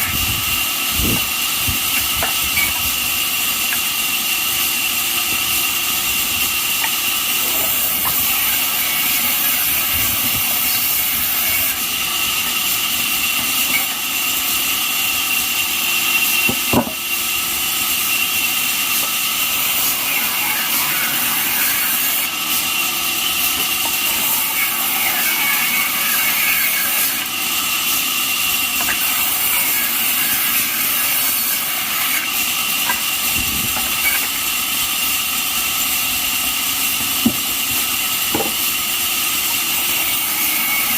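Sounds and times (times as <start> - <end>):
band sawmill whine and hiss: 0.0 - 40.9.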